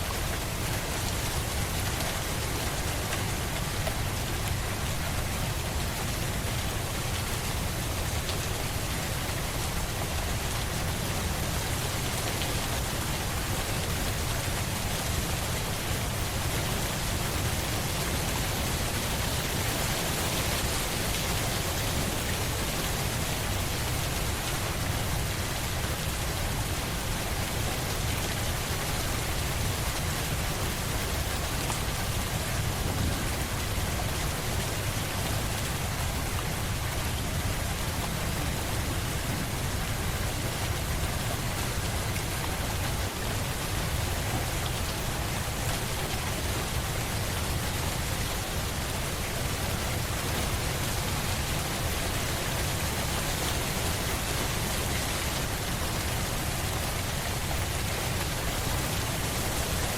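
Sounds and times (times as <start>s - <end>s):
steady rain hiss: 0.0s - 59.9s.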